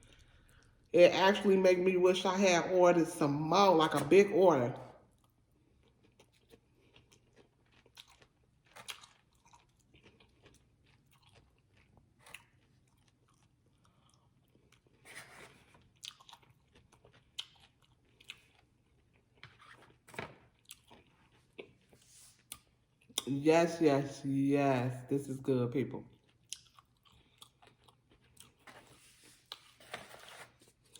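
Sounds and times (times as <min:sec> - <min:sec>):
person chewing food: 0:05.1 - 0:23.3, 0:26.1 - 0:30.9.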